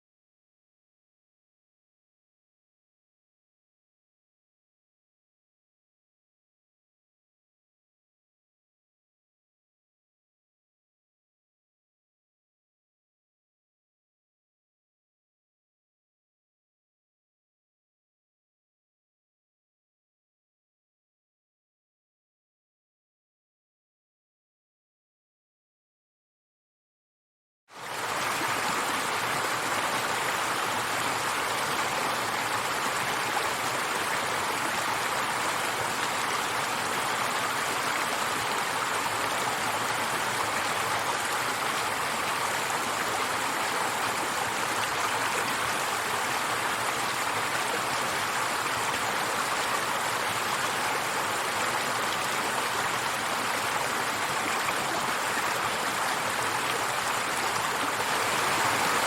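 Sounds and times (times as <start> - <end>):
river water rushing: 27.8 - 59.0.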